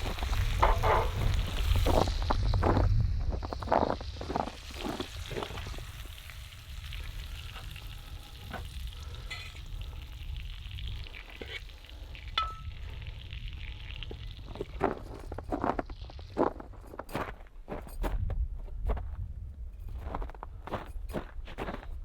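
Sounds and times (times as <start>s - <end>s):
food sizzling in a pan: 0.0s - 16.4s.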